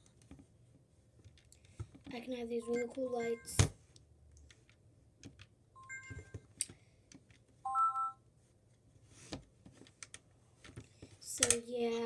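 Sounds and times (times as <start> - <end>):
electronic toy beeps: 2.6 - 3.6, 5.8 - 6.4, 7.7 - 8.2
chord of electronic tones: 7.7 - 8.2.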